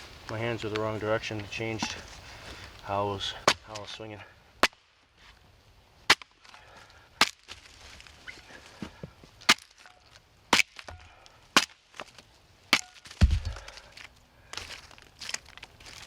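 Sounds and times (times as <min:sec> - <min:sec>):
axe chopping into log: 0:03.4 - 0:03.8, 0:04.6 - 0:04.9, 0:06.1 - 0:06.6, 0:07.2 - 0:07.6, 0:09.5 - 0:09.8, 0:10.5 - 0:11.0, 0:11.6 - 0:12.1, 0:12.8 - 0:13.6
heavy low thud: 0:13.2 - 0:13.6.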